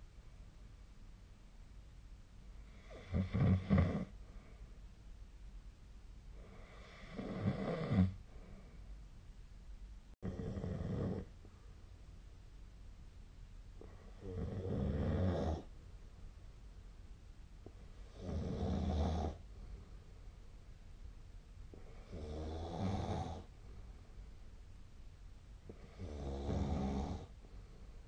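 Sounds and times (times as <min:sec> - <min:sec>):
person snoring: 0:02.7 - 0:04.1, 0:06.4 - 0:08.2, 0:10.2 - 0:11.3, 0:13.8 - 0:15.7, 0:18.1 - 0:19.4, 0:21.8 - 0:23.5, 0:25.7 - 0:27.3.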